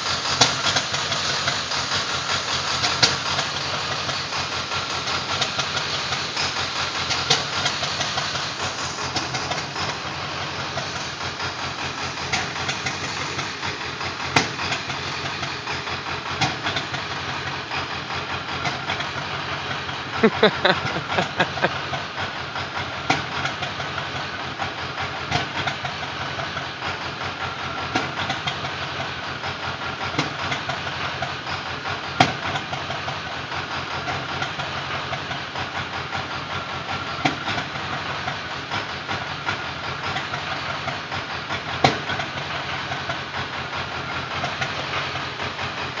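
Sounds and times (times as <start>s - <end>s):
diesel engine idling: 0.0s - 46.0s
sharp engine knocks: 12.1s - 19.2s, 41.8s - 42.4s.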